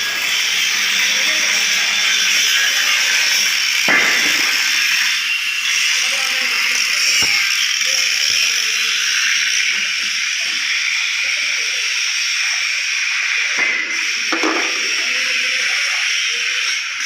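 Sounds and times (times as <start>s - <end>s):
welding arc hissing and crackling: 0.0s - 17.0s.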